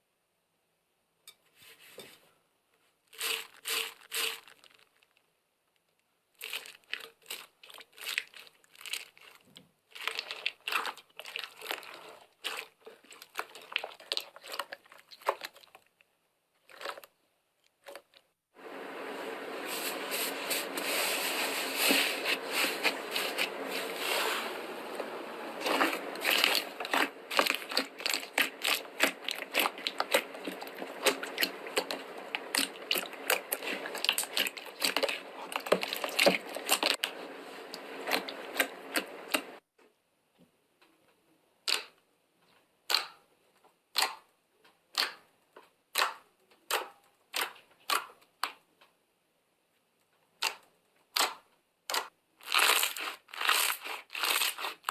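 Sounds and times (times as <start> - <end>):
slime crackling and popping: 6.4 - 15.9, 25.6 - 39.6, 50.4 - 54.9
background hiss: 18.6 - 36.0.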